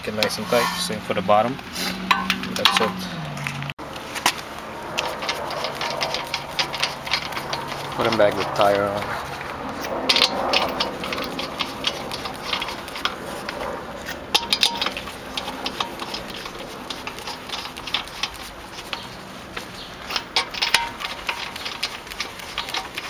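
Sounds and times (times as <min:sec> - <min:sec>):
metallic clicks of lug nuts: 0:02.0 - 0:03.6, 0:05.0 - 0:08.2, 0:09.8 - 0:13.7, 0:14.3 - 0:23.0.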